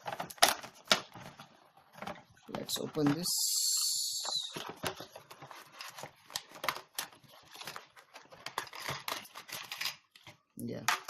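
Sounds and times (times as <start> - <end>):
packaging being opened: 2.2 - 10.5.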